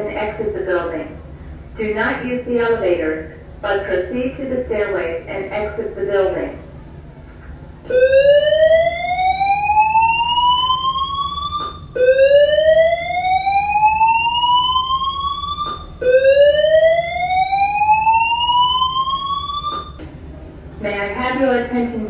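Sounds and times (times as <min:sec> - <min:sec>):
fire alarm rising whoops: 0:07.9 - 0:20.0.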